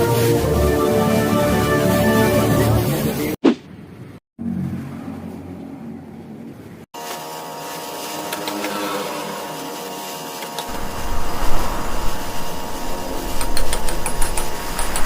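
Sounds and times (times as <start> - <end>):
power sander on metal panels: 7.0 - 15.0
low rumble: 10.7 - 14.8.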